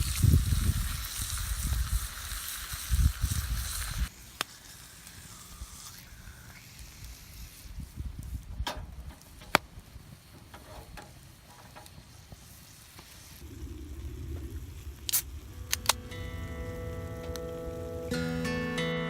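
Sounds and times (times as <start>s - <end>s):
wood fire crackling: 0.0s - 18.8s
acoustic guitar music: 15.7s - 19.0s.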